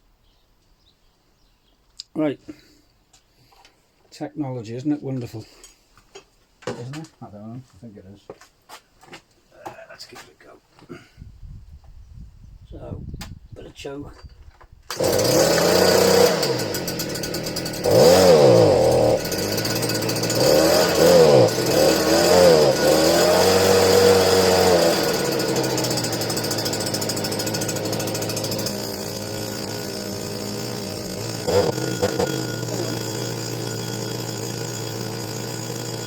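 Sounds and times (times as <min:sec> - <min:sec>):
leaf blower engine revving: 0:14.9 - 0:36.0.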